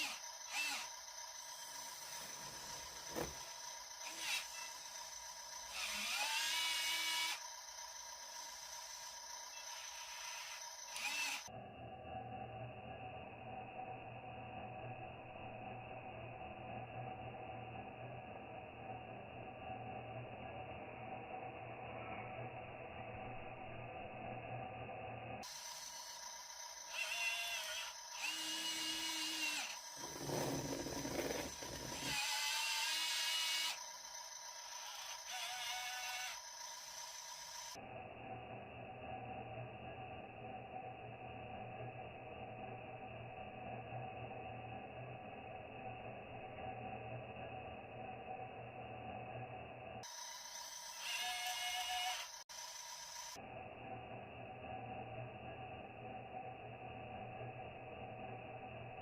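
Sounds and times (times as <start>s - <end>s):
small electric motor whining: 0.0s - 11.5s, 25.4s - 37.9s, 50.0s - 53.4s.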